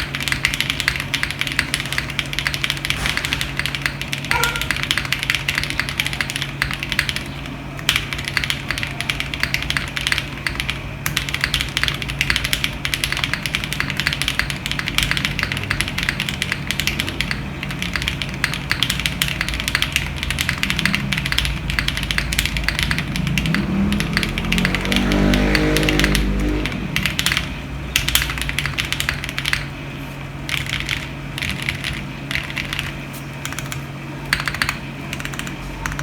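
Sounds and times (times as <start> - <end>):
fast typing on mechanical keyboard: 0.0 - 29.7, 30.5 - 36.0.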